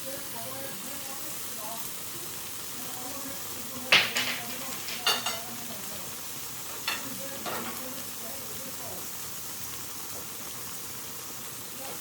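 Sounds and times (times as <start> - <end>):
food sizzling: 0.0 - 12.0
utensils clattering on pot: 3.9 - 5.6, 6.7 - 7.9.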